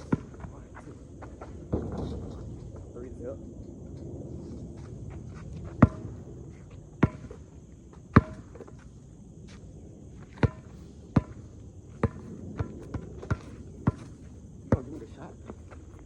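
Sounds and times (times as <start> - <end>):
basketball bouncing on hard court: 0.0 - 0.5, 5.7 - 6.1, 7.0 - 7.4, 8.1 - 8.7, 10.4 - 15.6.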